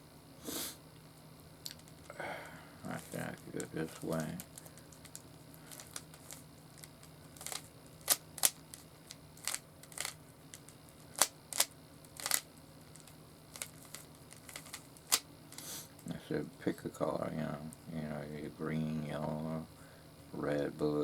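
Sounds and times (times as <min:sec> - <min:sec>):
puzzle cube clicking as twisted: 0:09.4 - 0:10.2, 0:11.2 - 0:12.4.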